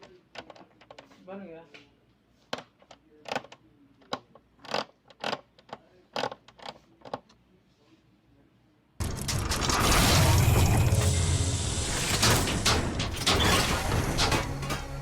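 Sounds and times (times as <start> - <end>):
hard objects clicking and knocking: 2.5 - 7.4.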